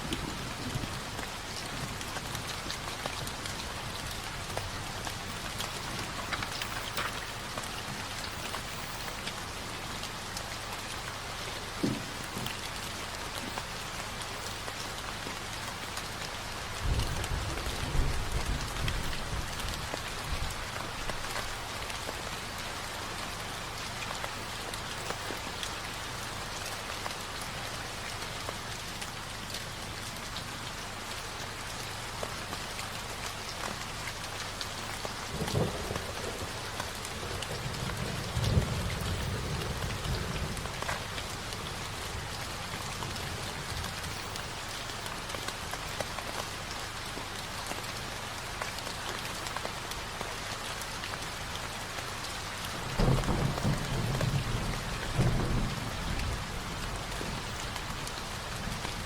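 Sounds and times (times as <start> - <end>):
steady rain falling: 0.0 - 59.0
low thunder rolls: 52.8 - 59.0.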